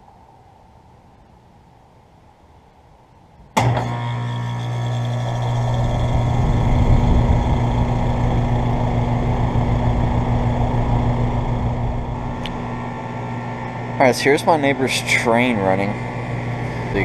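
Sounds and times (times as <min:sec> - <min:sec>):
fan rushing air: 0:03.5 - 0:17.0
compressor low hum: 0:03.6 - 0:17.0.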